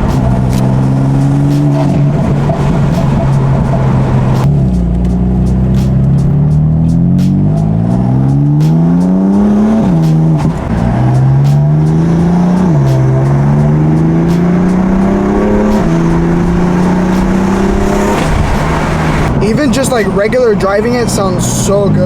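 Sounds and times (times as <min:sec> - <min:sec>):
car exhaust accelerating through gears: 0:00.0 - 0:22.0.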